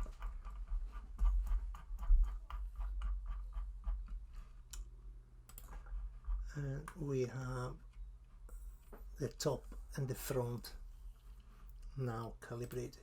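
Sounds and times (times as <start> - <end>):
low steady hum: 0.0 - 13.0
keyboard and mouse clicking: 5.5 - 5.8.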